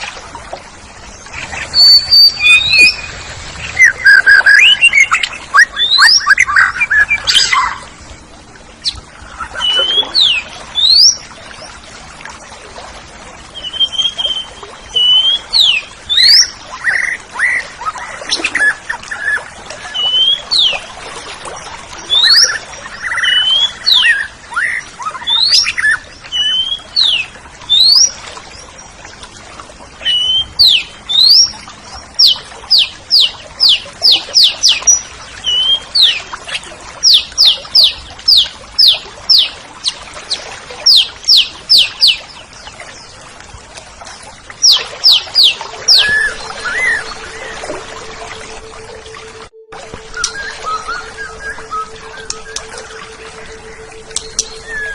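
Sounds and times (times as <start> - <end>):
magpie-robin singing: 1.7 - 3.1, 44.6 - 47.6, 50.1 - 54.9.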